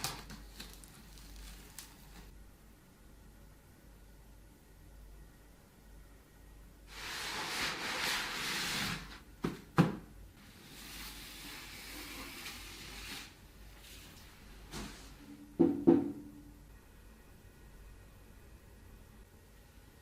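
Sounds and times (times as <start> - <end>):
rustling and sliding: 10.4 - 15.2.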